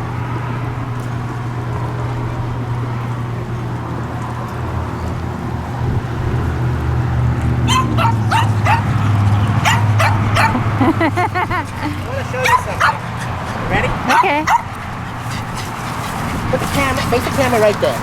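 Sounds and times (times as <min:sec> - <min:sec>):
small dog yipping: 0:07.6 - 0:09.0, 0:09.6 - 0:10.6, 0:12.4 - 0:13.3, 0:14.1 - 0:16.0.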